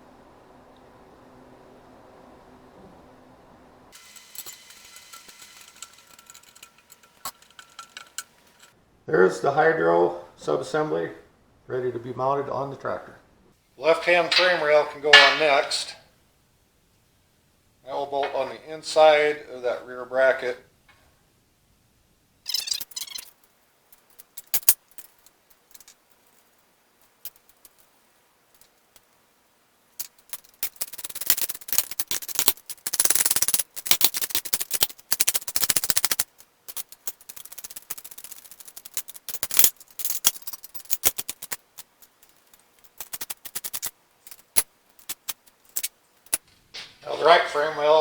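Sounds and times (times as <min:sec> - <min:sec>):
metal clinks and knocks: 0:04.0 - 0:08.7, 0:13.9 - 0:15.9, 0:18.2 - 0:18.6, 0:30.0 - 0:47.8.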